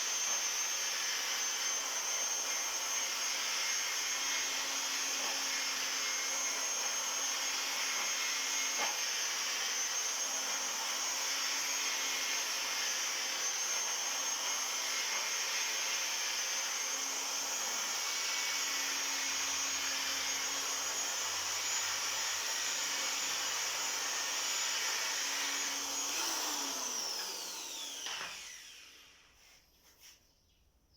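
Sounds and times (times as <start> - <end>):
electric grinder on metal drum: 0.0 - 29.1.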